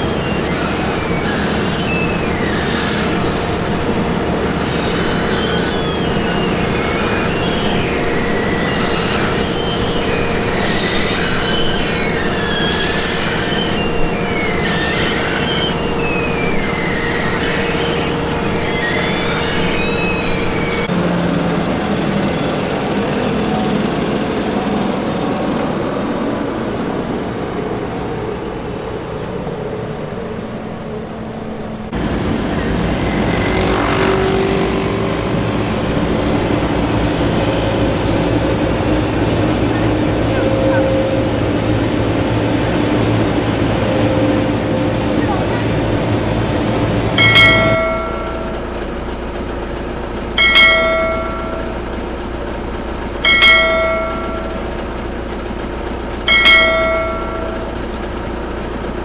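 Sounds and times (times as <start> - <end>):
high wavering metallic squeals: 0.0 - 21.0, 31.6 - 49.5, 50.4 - 52.3, 53.2 - 55.1, 56.3 - 58.2
heavy machinery engine hum: 0.0 - 59.0.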